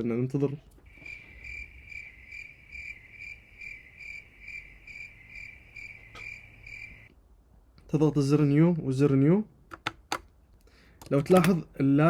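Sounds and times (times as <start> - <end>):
insect chirping: 0.8 - 7.1.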